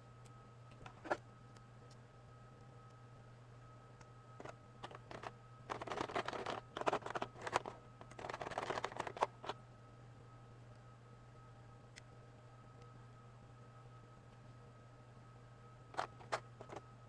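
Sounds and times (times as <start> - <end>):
low electrical hum: 0.0 - 17.0
plastic parts clicking and crackling: 4.4 - 9.6, 16.0 - 16.8.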